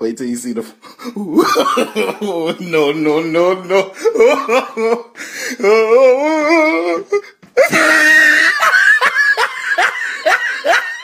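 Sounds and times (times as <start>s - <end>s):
person laughing loudly: 1.1s - 11.0s.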